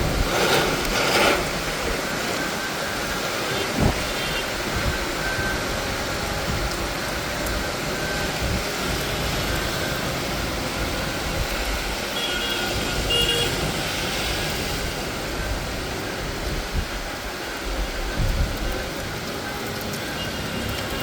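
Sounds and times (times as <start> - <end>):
steady rain falling: 0.0 - 21.0.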